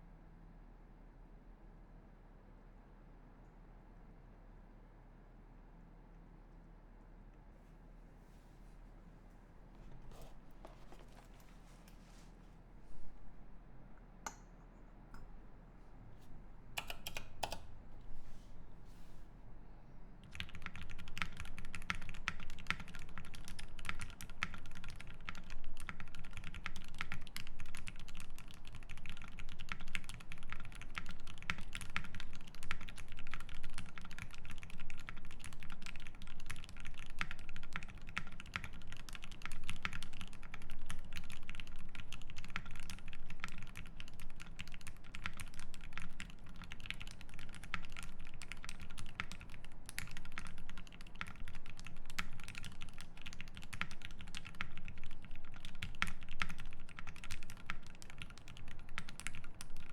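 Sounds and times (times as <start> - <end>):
fast typing on mechanical keyboard: 16.8 - 17.7, 20.2 - 59.9.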